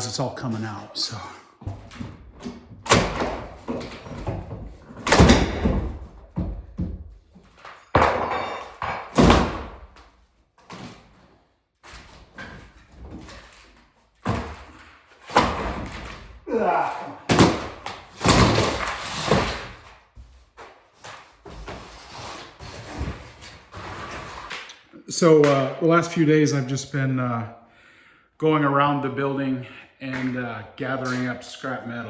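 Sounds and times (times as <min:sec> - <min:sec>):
wood paneling banging and crashing: 0:01.6 - 0:24.7.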